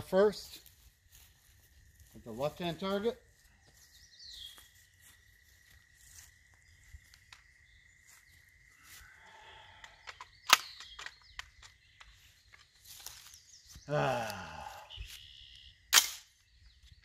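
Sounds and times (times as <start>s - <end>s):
small clicks: 9.8s - 12.7s.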